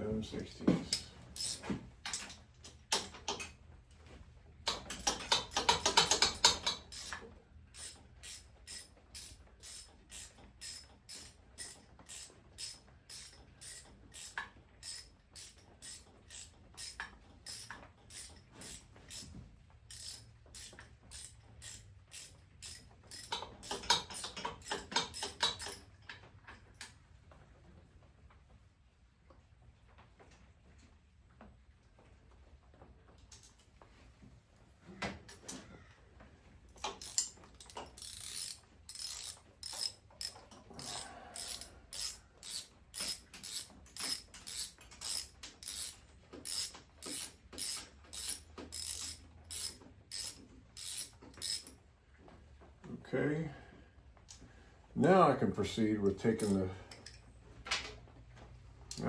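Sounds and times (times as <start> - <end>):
ratchet wrench clicking: 1.4 - 2.3, 4.7 - 7.2, 7.8 - 19.3, 19.9 - 25.8, 36.8 - 51.7, 56.4 - 57.2.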